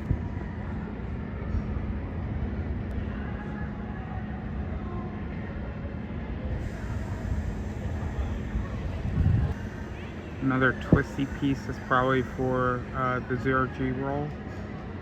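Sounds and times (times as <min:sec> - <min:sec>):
faint steady hum: 0:00.0 - 0:15.0
low outdoor background rumble: 0:00.0 - 0:15.0.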